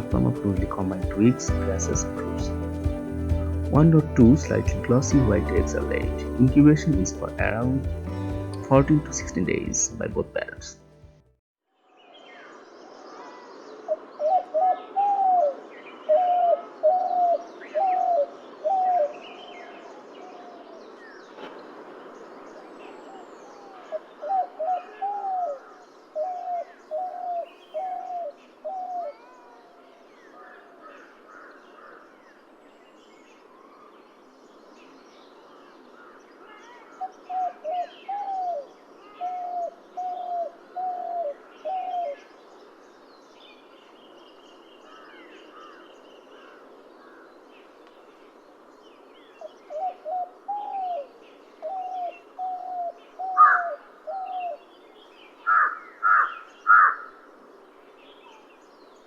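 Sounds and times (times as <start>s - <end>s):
small birds chirping: 0.0s - 10.9s, 12.0s - 59.0s
dove cooing: 13.9s - 19.2s, 23.6s - 29.3s, 37.0s - 42.2s, 49.7s - 54.6s, 55.5s - 57.1s.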